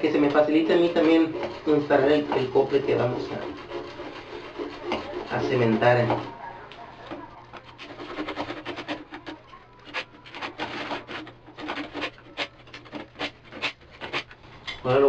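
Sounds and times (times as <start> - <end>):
hand saw cutting plastic pipe: 0.0 - 6.3, 7.1 - 14.8.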